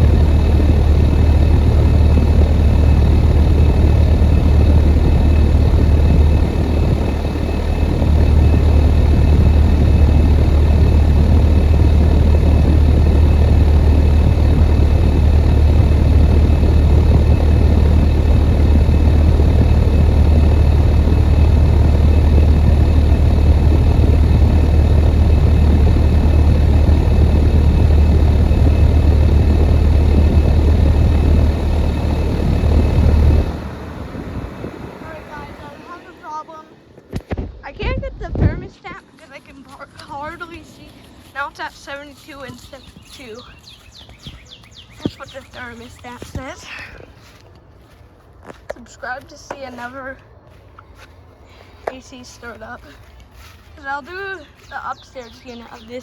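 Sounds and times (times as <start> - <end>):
condenser fan rushing: 0.0 - 38.5
compressor hum: 0.0 - 38.7.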